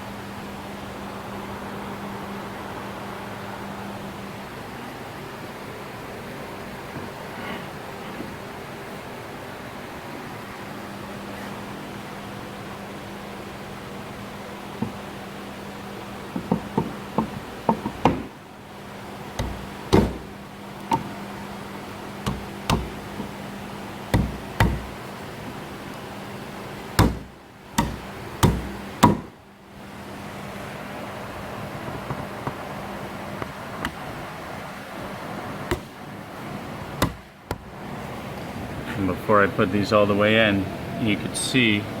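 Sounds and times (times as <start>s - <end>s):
sharp knocks on wood: 16.3s - 18.4s, 19.4s - 20.3s, 20.9s - 21.2s, 22.2s - 23.3s, 24.1s - 25.0s, 27.0s - 29.4s, 37.0s - 37.7s.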